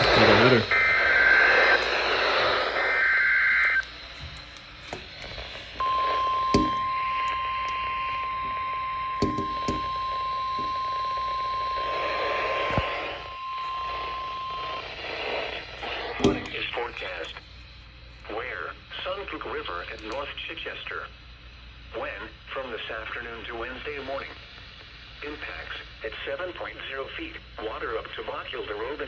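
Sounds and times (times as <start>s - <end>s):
two-tone digital data warble: 0.0s - 1.9s
radio static: 0.0s - 17.5s, 21.9s - 29.0s
radio crackle and clicks: 0.0s - 21.1s
steady single-pitch alert tone: 5.8s - 14.8s.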